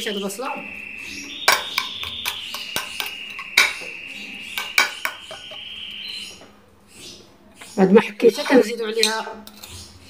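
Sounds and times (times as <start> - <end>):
steady high-pitched tone: 0.0 - 6.5.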